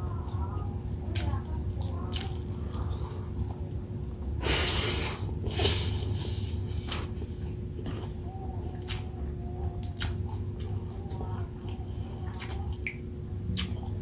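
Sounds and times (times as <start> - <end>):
person eating: 0.0 - 14.0
steady low hum: 0.0 - 14.0
sniffs through the nose: 4.4 - 7.2.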